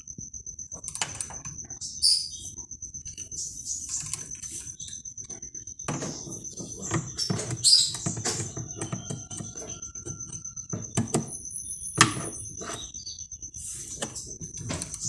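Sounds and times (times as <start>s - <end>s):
thin steady high tone: 0.0s - 15.0s
tools knocking and clicking: 3.9s - 12.9s.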